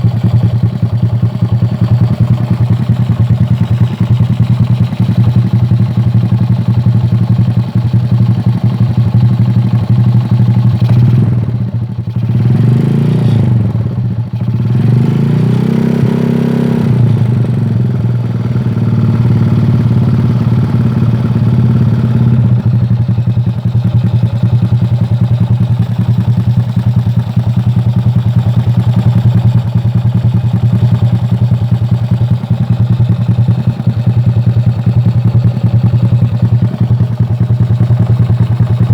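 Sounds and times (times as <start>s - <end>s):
motorcycle engine idling and revving: 0.0s - 38.9s.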